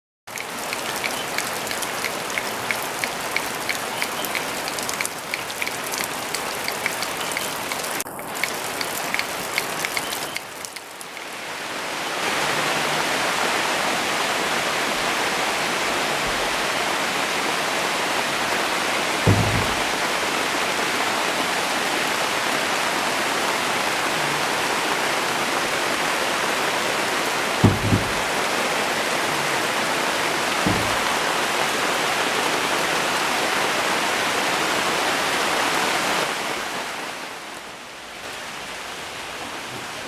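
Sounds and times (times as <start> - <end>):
raindrops ticking: 0.3 - 11.4, 19.2 - 20.2, 27.6 - 29.1, 30.5 - 31.6
rain falling: 0.3 - 40.0.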